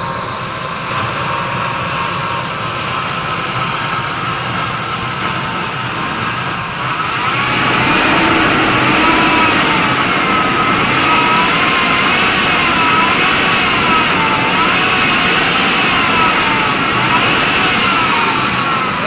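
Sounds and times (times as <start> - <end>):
vehicle engine running: 5.2 - 19.0
wavering whine: 6.2 - 19.0.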